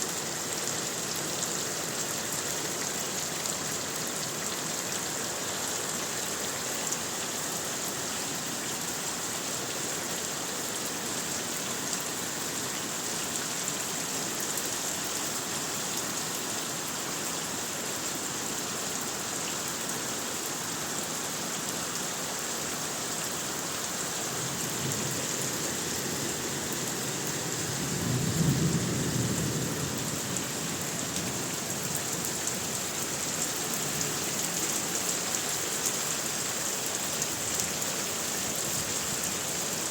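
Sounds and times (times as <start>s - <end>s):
heavy rain falling: 0.0s - 39.9s
low roll of thunder: 27.8s - 30.5s.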